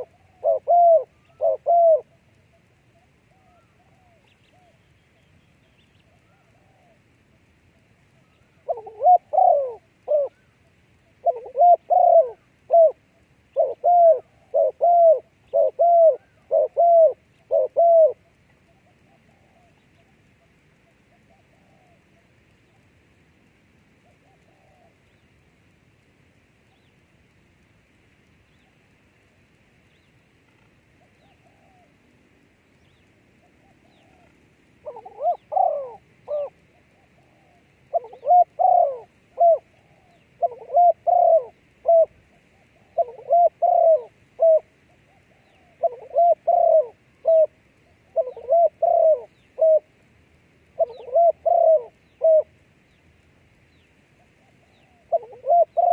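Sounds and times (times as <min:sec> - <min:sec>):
dove cooing: 0:00.0 - 0:04.8, 0:06.1 - 0:07.4, 0:08.0 - 0:22.8, 0:24.0 - 0:25.1, 0:31.0 - 0:32.0, 0:33.4 - 0:49.9, 0:50.8 - 0:52.6, 0:54.2 - 0:55.9.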